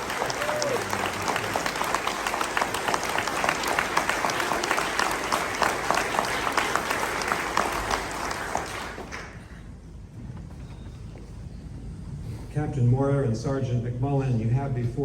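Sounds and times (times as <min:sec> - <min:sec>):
audience applauding: 0:00.0 - 0:09.4.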